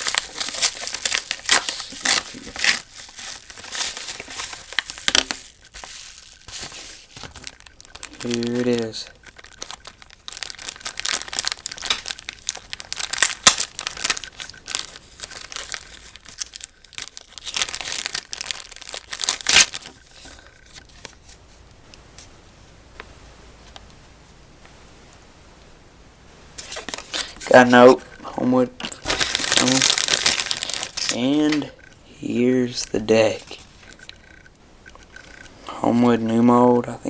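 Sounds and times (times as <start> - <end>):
package torn open: 0.0 - 21.2, 26.6 - 27.9, 28.8 - 31.6
packaging crinkling: 0.0 - 21.4, 26.6 - 35.6.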